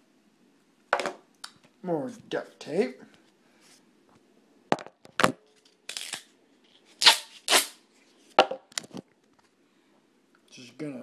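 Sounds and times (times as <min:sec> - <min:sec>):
duct tape ripping: 0:05.2 - 0:06.3, 0:06.9 - 0:07.8.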